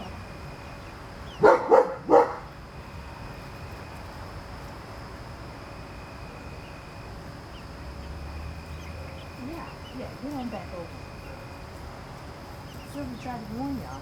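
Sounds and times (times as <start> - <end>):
dog barking: 1.4 - 2.5.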